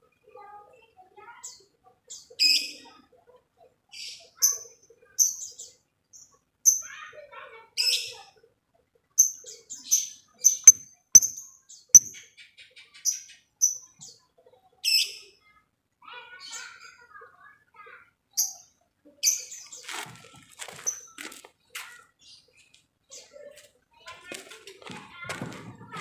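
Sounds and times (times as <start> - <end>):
bird ticking call: 10.6 - 11.4, 12.0 - 12.2.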